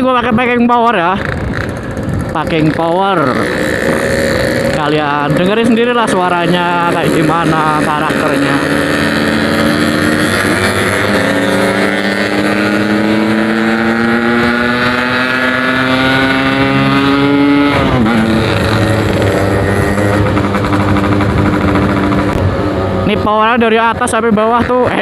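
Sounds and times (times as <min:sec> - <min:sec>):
two-stroke motorcycle engine accelerating: 0:00.0 - 0:25.0.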